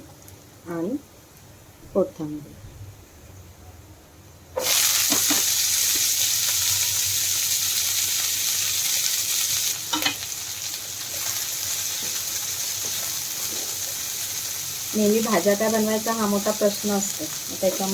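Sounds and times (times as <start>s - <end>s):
vegetables sizzling in oil: 4.6s - 17.9s.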